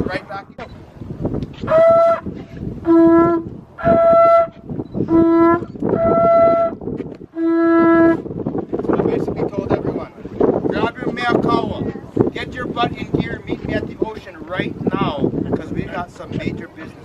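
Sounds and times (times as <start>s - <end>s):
conch shell trumpet blasts: 1.6s - 8.2s.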